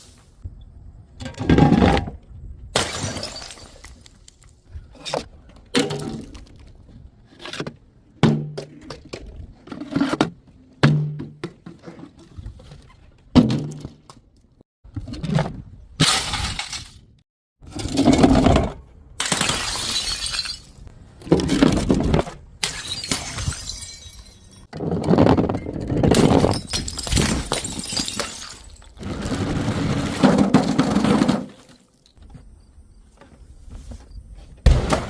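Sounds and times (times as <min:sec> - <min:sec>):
glass bottles shattering: 0:02.8 - 0:04.0, 0:19.2 - 0:20.9, 0:22.6 - 0:24.7, 0:26.1 - 0:29.0.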